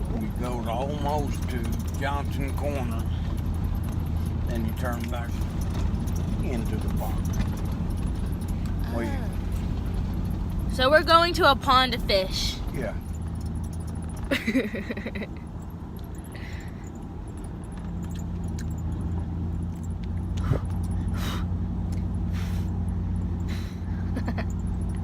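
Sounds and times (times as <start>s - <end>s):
light knocks and rattles: 0.0s - 10.7s, 12.7s - 21.1s
truck engine and road noise: 0.0s - 25.0s.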